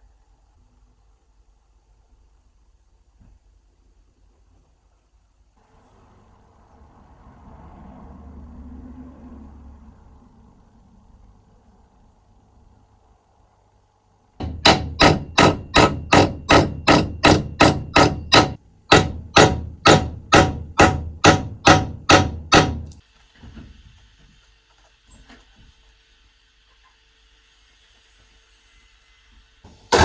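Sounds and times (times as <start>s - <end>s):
hammer blows: 14.4s - 23.0s.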